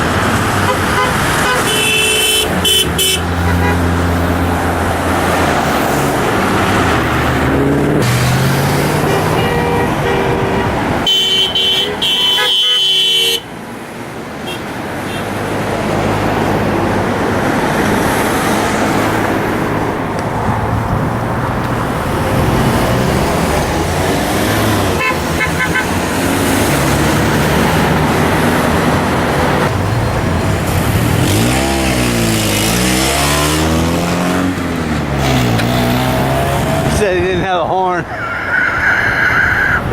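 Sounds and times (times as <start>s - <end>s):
heavy highway traffic: 0.0s - 39.9s
car horn honking: 0.6s - 4.2s, 8.8s - 13.6s, 14.4s - 15.4s, 24.6s - 26.2s.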